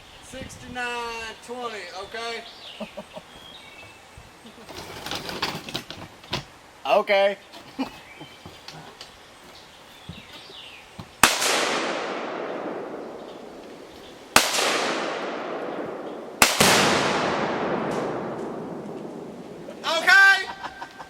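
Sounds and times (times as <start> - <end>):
rifle shots with long echo: 11.2 - 19.8.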